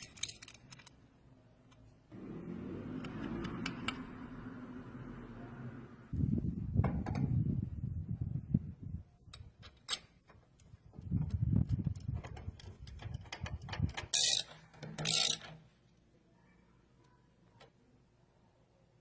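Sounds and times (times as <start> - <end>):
ratchet clicking: 12.5 - 15.5.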